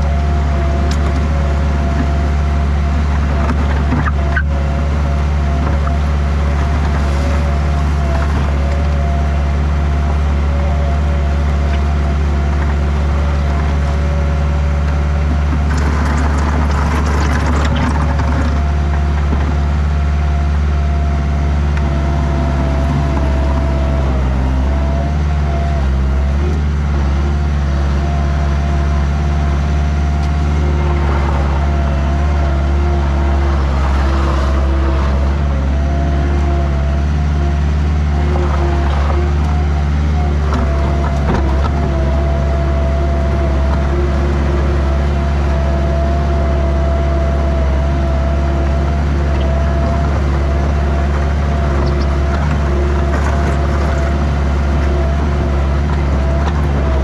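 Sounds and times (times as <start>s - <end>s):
construction machinery engine running: 0.0s - 57.0s
rattling and scraping: 15.3s - 19.7s.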